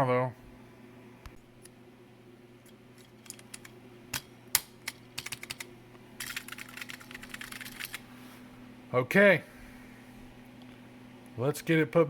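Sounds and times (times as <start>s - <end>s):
faint steady hum: 0.0s - 12.0s
keyboard keycaps clicking: 3.2s - 8.0s.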